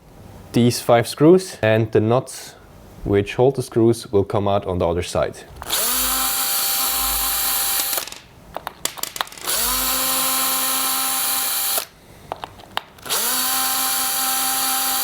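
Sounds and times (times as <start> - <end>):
power drill whining: 5.6 - 8.1, 9.2 - 12.0, 13.0 - 15.0.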